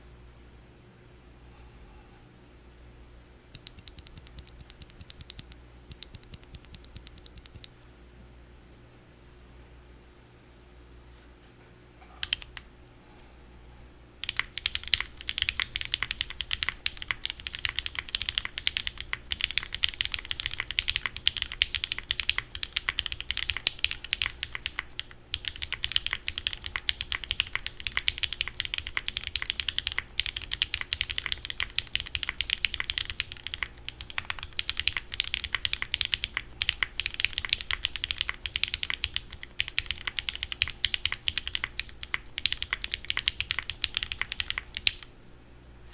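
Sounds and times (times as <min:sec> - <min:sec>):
mechanical keyboard typing: 0:03.5 - 0:07.7, 0:12.2 - 0:12.6, 0:14.2 - 0:45.1.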